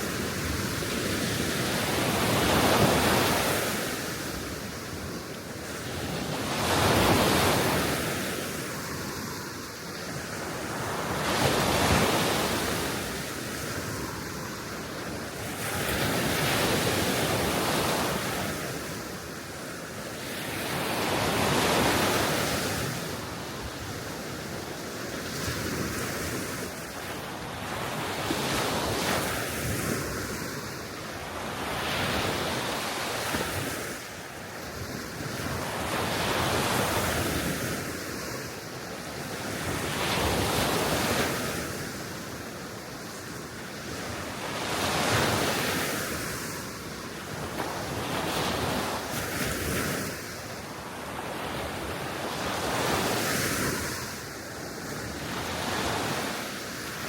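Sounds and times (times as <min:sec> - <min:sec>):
small waves washing ashore: 0:00.0 - 0:57.0.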